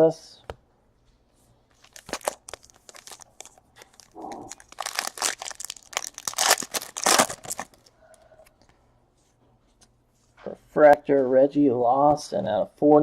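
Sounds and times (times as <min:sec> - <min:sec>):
foil wrapper crinkling and tearing: 0:01.7 - 0:07.9.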